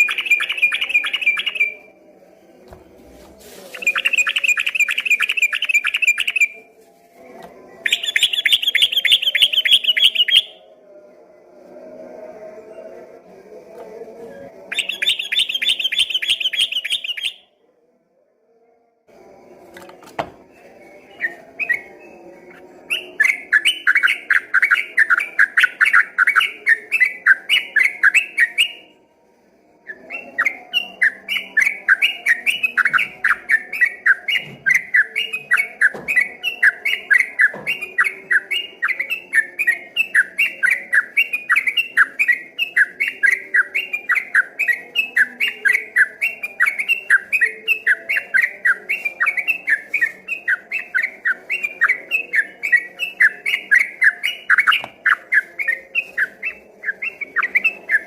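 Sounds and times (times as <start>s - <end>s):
bird singing rapid chirps: 0.0s - 1.9s, 3.7s - 6.6s, 7.8s - 10.6s, 14.7s - 17.5s, 22.8s - 28.9s, 29.9s - 58.0s.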